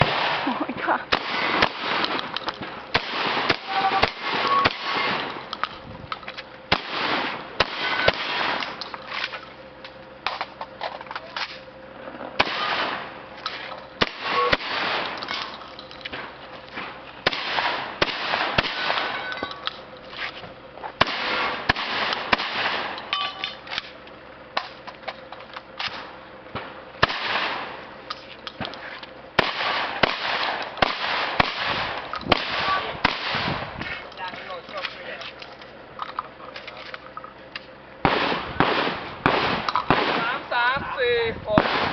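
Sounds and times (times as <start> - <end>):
shotgun shots: 0.0 - 5.5, 6.7 - 8.8, 12.4 - 15.4, 16.1 - 19.4, 21.0 - 23.6, 25.8 - 27.8, 29.4 - 33.7, 38.0 - 40.5, 41.5 - 41.9.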